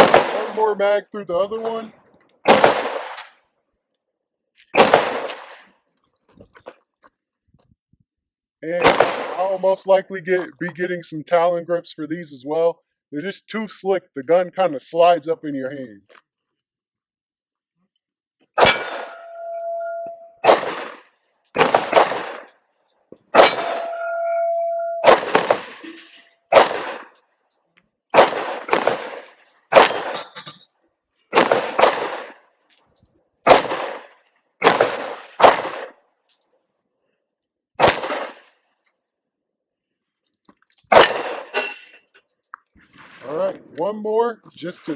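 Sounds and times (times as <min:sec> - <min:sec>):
pistol shots: 0:00.0 - 0:00.8, 0:02.4 - 0:03.3, 0:04.7 - 0:05.7, 0:08.8 - 0:09.6, 0:18.6 - 0:22.6, 0:23.3 - 0:24.4, 0:25.0 - 0:25.9, 0:26.5 - 0:27.2, 0:28.1 - 0:30.3, 0:31.3 - 0:32.4, 0:33.4 - 0:36.0, 0:37.8 - 0:38.5, 0:40.9 - 0:41.8
steel plate target ringing: 0:18.6 - 0:20.4, 0:23.3 - 0:25.4.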